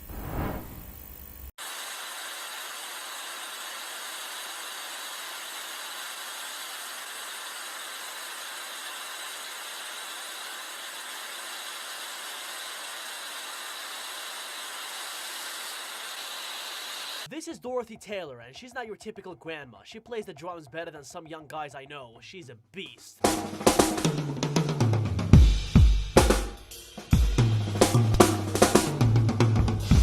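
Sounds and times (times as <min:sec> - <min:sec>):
steady hiss: 0:00.0 - 0:17.3.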